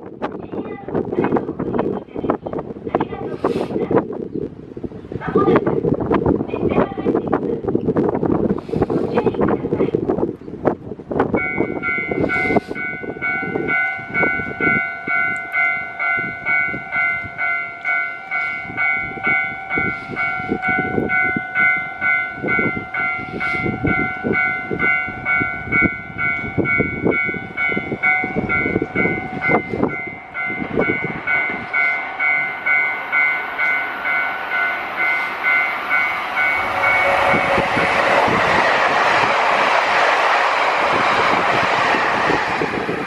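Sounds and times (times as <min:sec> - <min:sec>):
wind buffeting microphone: 0:00.0 - 0:43.0
train passing rushing: 0:11.1 - 0:43.0
level-crossing bell clanging: 0:11.4 - 0:38.4.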